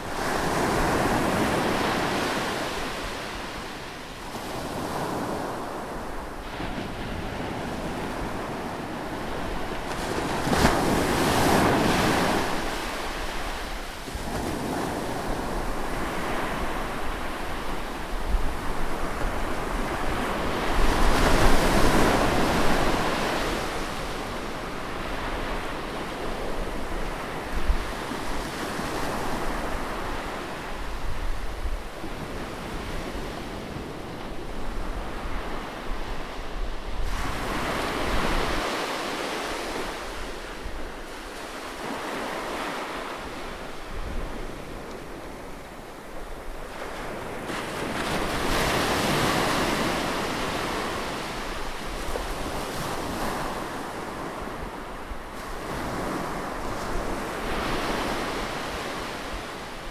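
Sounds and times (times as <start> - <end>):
sea waves breaking on shore: 34.9 - 59.9.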